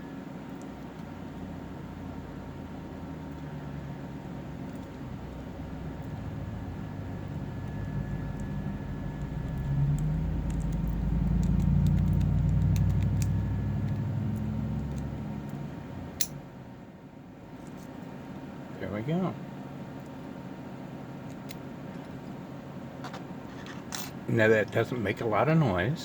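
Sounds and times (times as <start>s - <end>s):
low rumble: 4.6s - 16.8s.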